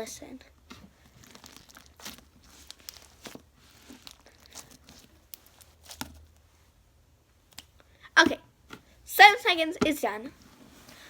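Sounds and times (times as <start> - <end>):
slime crackling and popping: 1.1 - 6.4.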